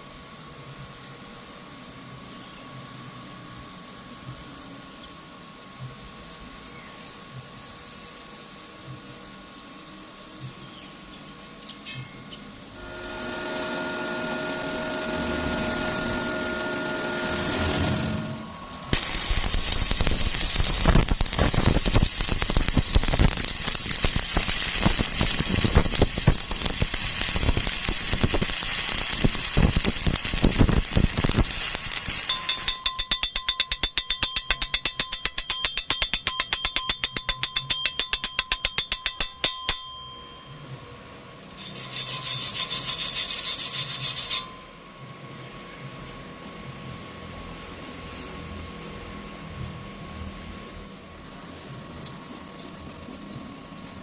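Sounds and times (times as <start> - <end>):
fast scraping strokes on metal: 17.2 - 39.9, 41.4 - 44.7
hiss: 18.9 - 32.3
dense crackling with sharp clicks: 18.9 - 32.8.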